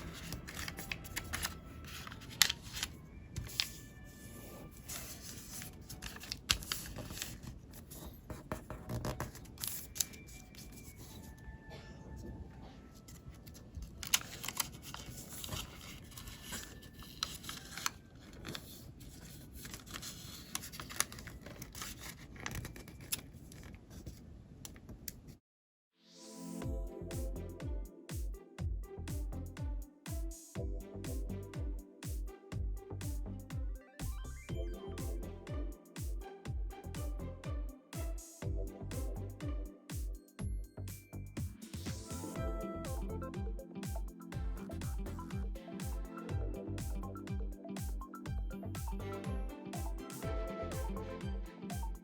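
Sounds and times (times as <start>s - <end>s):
paper rustling and creasing: 0.0s - 11.3s, 13.1s - 24.2s
electronic music with kick drum: 26.6s - 52.0s.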